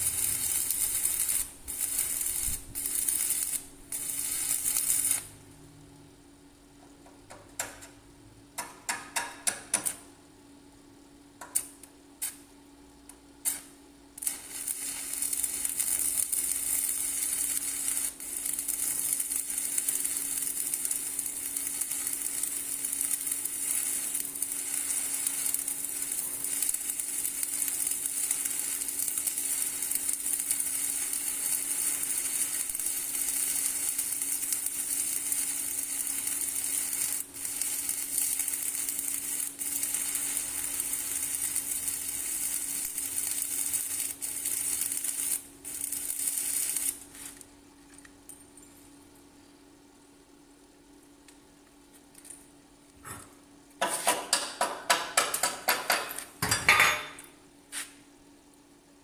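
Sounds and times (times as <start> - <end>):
arc welding crackling sizzle: 0.0 - 5.8, 11.4 - 47.6
welder hum: 0.0 - 6.1, 13.1 - 47.5.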